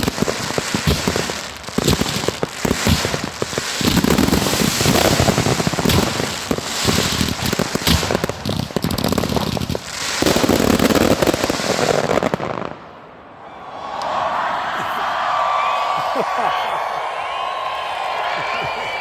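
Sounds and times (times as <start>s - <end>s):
fireworks crackling and banging: 0.0s - 13.0s.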